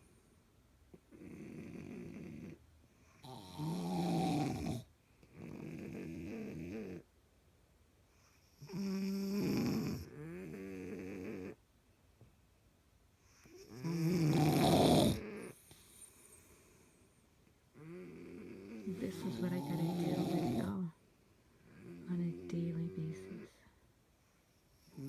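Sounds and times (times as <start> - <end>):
quiet breathy snores: 0.0 - 7.1, 8.1 - 11.6, 13.2 - 25.0
loud rattling snores: 1.1 - 2.6, 3.2 - 7.0, 8.6 - 11.6, 13.6 - 15.6, 17.8 - 20.9.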